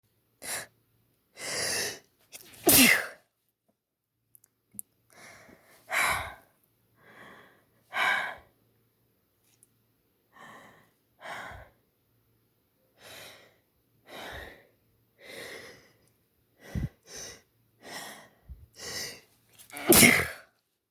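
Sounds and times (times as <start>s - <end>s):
woman sneezing wetly: 2.6s - 3.2s, 19.7s - 20.4s
sharp in-breath: 16.6s - 19.2s.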